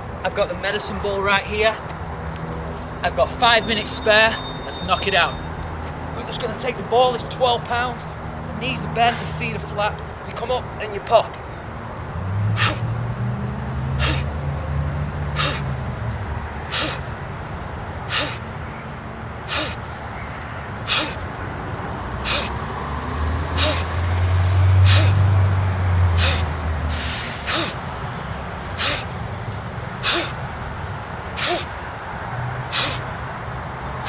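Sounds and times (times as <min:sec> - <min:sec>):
person exhaling sharply: 0:12.6 - 0:12.9, 0:14.0 - 0:14.3, 0:15.4 - 0:15.7, 0:16.7 - 0:17.1, 0:18.1 - 0:18.5, 0:19.5 - 0:19.8, 0:20.8 - 0:21.3, 0:22.2 - 0:22.6, 0:23.6 - 0:24.0, 0:24.8 - 0:25.2, 0:26.2 - 0:27.9, 0:28.8 - 0:29.1, 0:30.0 - 0:30.4, 0:31.4 - 0:31.8, 0:32.7 - 0:33.1.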